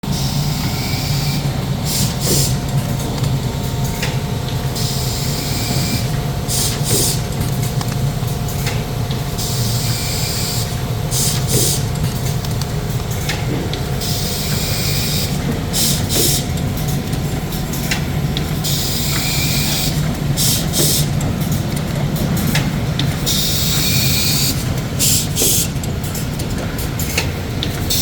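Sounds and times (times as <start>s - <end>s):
machinery low hum: 0.0s - 28.0s.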